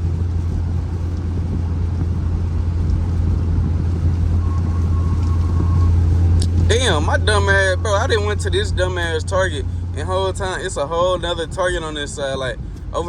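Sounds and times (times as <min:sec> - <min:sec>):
car cabin road and engine drone: 0:00.0 - 0:13.0
faint thin high tone: 0:04.4 - 0:08.8.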